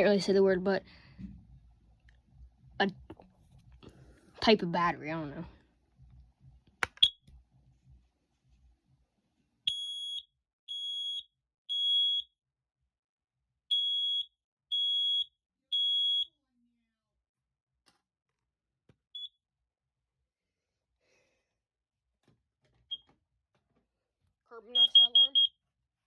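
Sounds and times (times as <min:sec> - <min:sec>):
smoke alarm beeping: 0:09.7 - 0:12.3, 0:13.7 - 0:16.3, 0:24.8 - 0:25.5
smoke alarm chirp: 0:09.7 - 0:12.3, 0:13.7 - 0:16.3, 0:19.2 - 0:19.4, 0:24.7 - 0:25.6.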